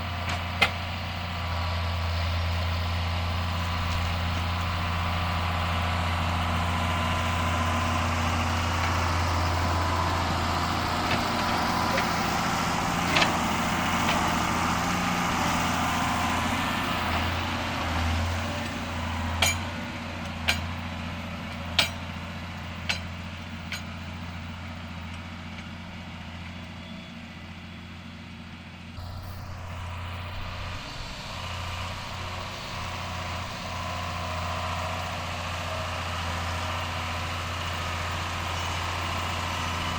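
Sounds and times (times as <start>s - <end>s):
tractor diesel engine running: 0.0s - 39.9s
sharp knocks or clanks: 19.3s - 19.8s, 21.6s - 22.1s.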